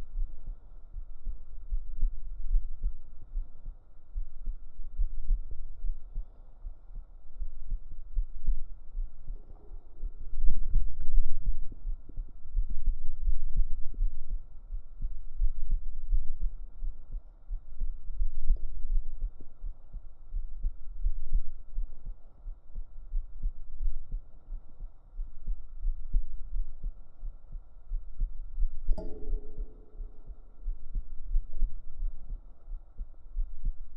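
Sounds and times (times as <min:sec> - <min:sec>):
heartbeat thumps: 0:00.0 - 0:33.9.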